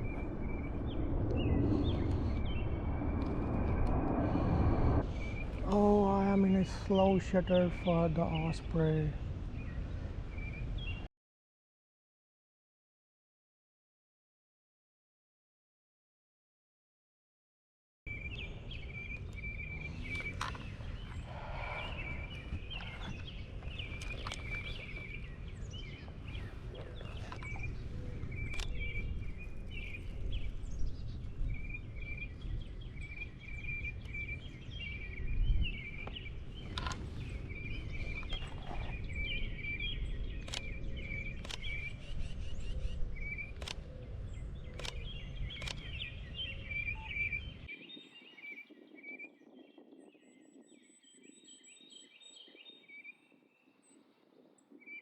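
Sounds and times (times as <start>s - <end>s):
small birds chirping: 0.0s - 4.4s, 5.0s - 11.1s, 18.1s - 55.0s
wind rumble on microphone: 0.0s - 11.1s, 18.1s - 55.0s
sharp clicks: 28.4s - 28.8s, 40.4s - 42.0s, 43.5s - 43.9s, 44.7s - 46.0s.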